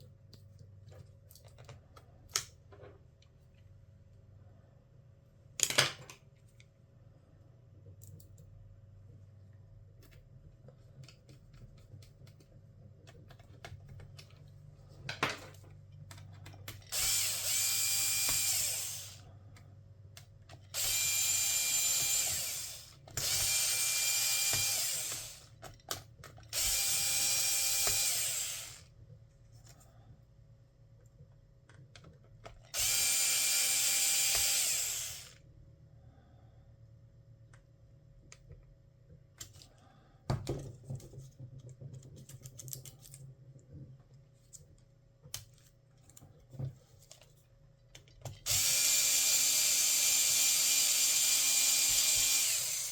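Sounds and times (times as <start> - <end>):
electric screwdriver whining: 16.9 - 19.2, 20.7 - 25.5, 26.5 - 28.9, 32.7 - 35.4, 48.5 - 52.9.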